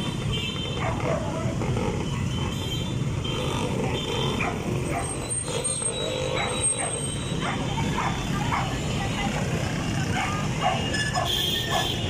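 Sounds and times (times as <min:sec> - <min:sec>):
dog barking: 0:00.8 - 0:01.6, 0:04.4 - 0:05.2, 0:06.3 - 0:08.8, 0:10.1 - 0:12.0.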